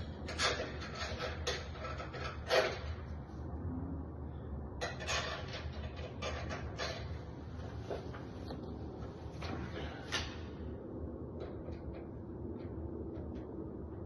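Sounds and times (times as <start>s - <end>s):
door lock metallic rattles and scrapes: 0.0s - 3.3s, 4.8s - 8.2s.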